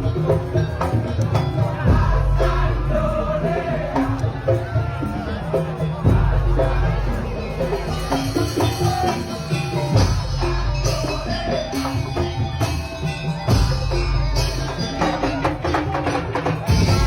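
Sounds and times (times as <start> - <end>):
heavy drums: 0.0 - 17.0
jingling percussion: 0.0 - 17.0
percussion ensemble music: 0.0 - 17.0.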